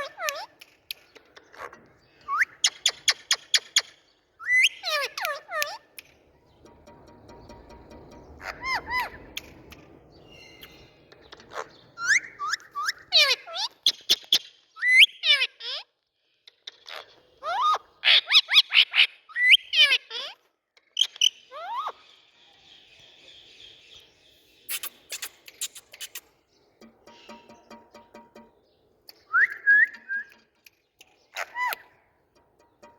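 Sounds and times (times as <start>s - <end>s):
parakeet squawking: 4.4s - 5.9s, 8.4s - 9.3s.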